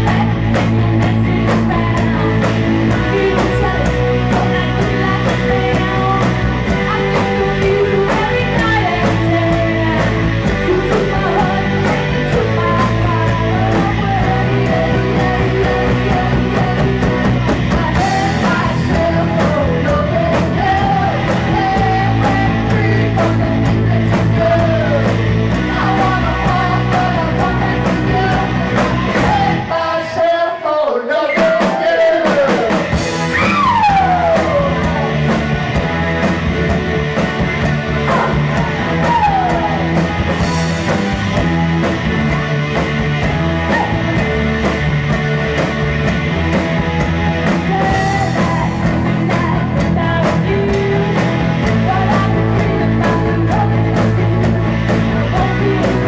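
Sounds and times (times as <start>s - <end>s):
rock band playing live: 0.0s - 56.0s
bent falling guitar notes: 33.0s - 50.4s.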